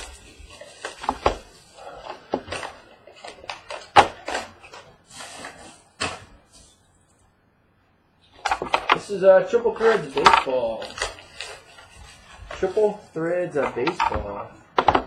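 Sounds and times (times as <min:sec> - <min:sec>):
packaging clicks and knocks: 0:08.4 - 0:09.0, 0:13.6 - 0:15.0.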